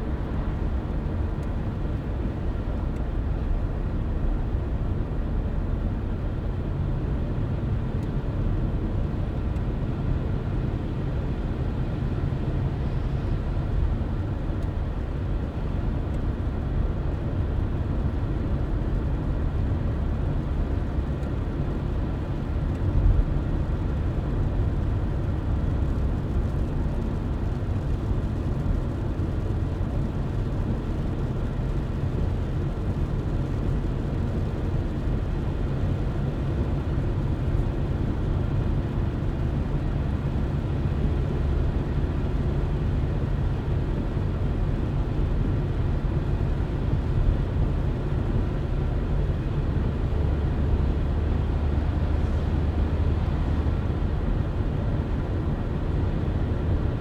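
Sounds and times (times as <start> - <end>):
car driving rumble: 6.3 - 57.0.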